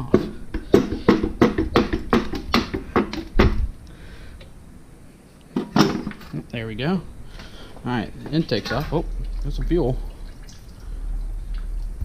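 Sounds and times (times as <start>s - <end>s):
metal knocks and clanks: 5.6s - 6.4s.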